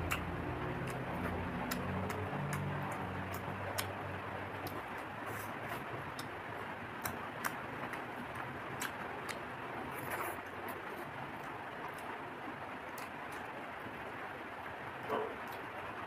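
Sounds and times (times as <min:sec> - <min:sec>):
mouth clicks and smacks chewing: 0:00.0 - 0:04.0, 0:04.6 - 0:06.4, 0:07.0 - 0:10.8, 0:12.9 - 0:13.5.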